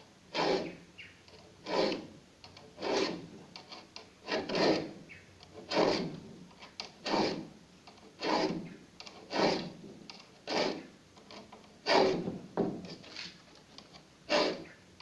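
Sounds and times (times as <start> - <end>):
file rasping on saw teeth: 0.4 - 0.8, 1.6 - 2.0, 2.8 - 3.2, 4.3 - 4.9, 5.6 - 6.1, 7.0 - 7.4, 8.2 - 8.6, 9.3 - 9.7, 10.5 - 10.8, 11.9 - 12.2, 14.3 - 14.7.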